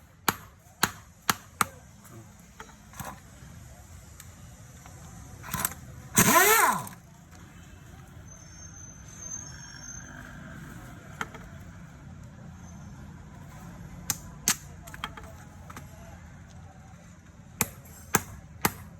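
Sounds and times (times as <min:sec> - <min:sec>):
sharp engine clicks: 0:04.9 - 0:07.0.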